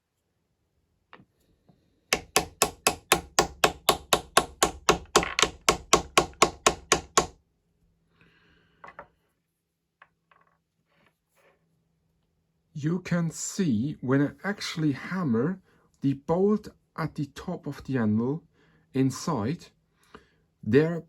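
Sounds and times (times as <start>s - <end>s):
wooden toy hammer tapping: 2.1s - 7.4s.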